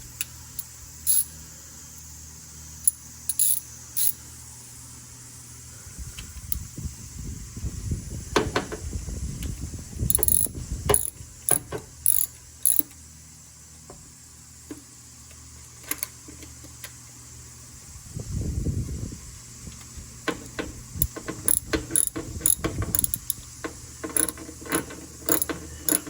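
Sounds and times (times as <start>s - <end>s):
hand tools clinking on metal: 0.6s - 1.3s, 3.3s - 4.2s, 24.0s - 26.0s.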